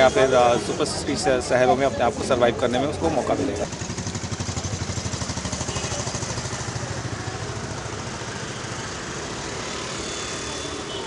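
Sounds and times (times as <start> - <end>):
street noise: 0.0 - 11.0
small engine idling: 3.6 - 10.6.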